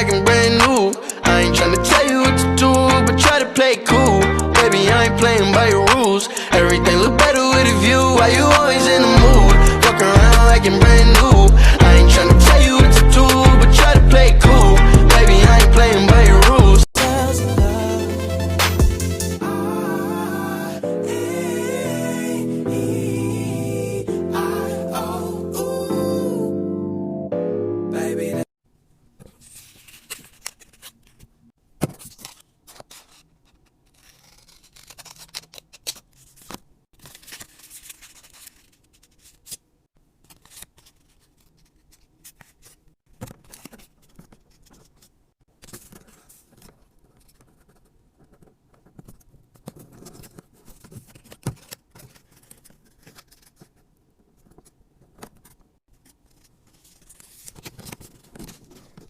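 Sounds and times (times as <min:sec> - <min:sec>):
scissors cutting: 0:05.9 - 0:06.4, 0:32.0 - 0:39.6
material being handled: 0:28.9 - 0:59.0.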